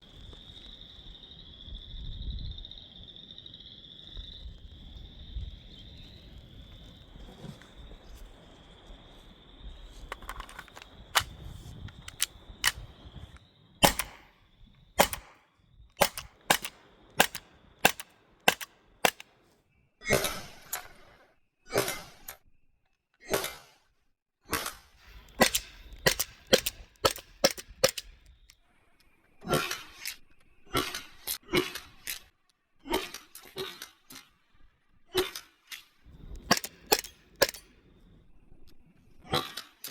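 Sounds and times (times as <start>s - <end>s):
paintball pistol shots: 13.8s - 14.4s, 15.0s - 15.4s, 16.0s - 19.3s, 25.4s - 28.1s, 36.4s - 37.6s.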